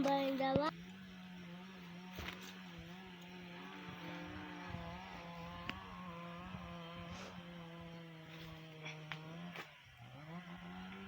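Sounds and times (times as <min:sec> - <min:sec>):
faint engine running: 0:00.0 - 0:11.0.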